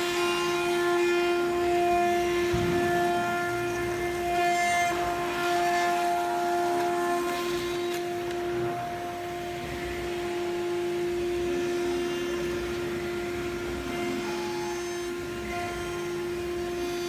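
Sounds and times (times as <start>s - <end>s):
router spindle whine: 0.0s - 17.0s.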